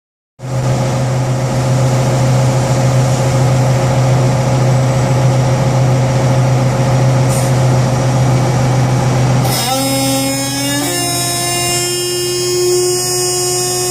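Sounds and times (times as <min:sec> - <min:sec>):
diesel engine humming: 0:00.4 - 0:13.9
high hydraulic squeal: 0:09.4 - 0:13.9.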